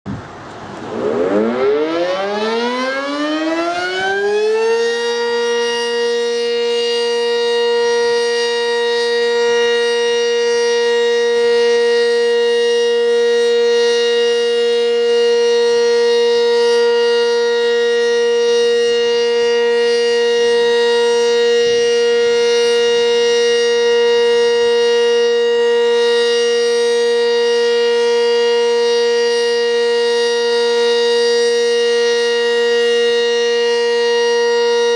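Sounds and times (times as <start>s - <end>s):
warning siren winding up: 0.3s - 34.9s.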